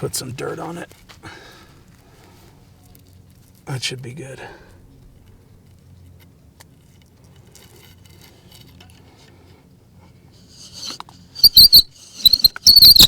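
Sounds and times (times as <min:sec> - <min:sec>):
wooden spindle squeaking: 0:10.4 - 0:13.0.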